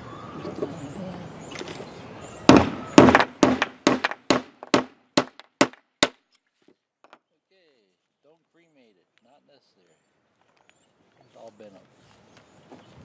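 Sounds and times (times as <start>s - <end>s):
hammer striking metal tool: 2.5s - 5.8s.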